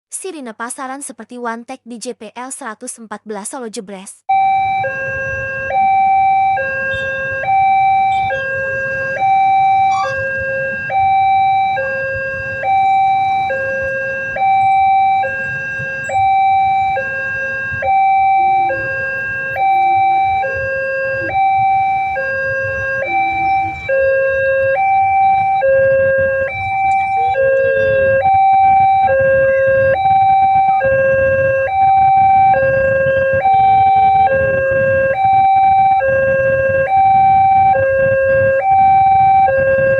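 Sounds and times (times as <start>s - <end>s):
two-tone warning siren: 4.3s - 39.9s.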